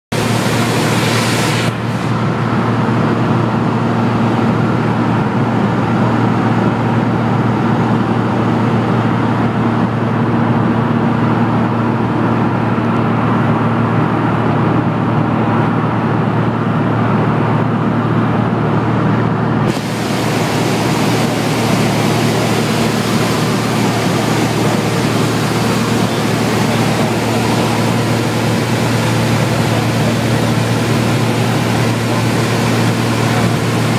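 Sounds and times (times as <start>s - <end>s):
aircraft engine drone in cabin: 0.1s - 33.9s
rushing hiss: 0.2s - 2.2s, 19.7s - 33.9s.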